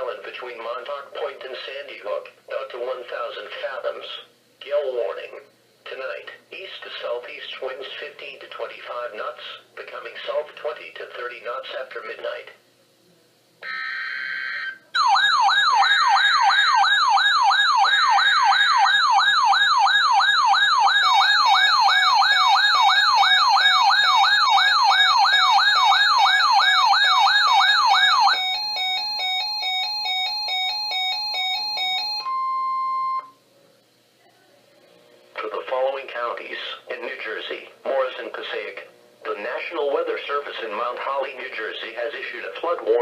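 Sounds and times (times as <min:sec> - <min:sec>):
warbling electronic siren tone: 0:13.6 - 0:33.3
data tones: 0:26.5 - 0:33.4.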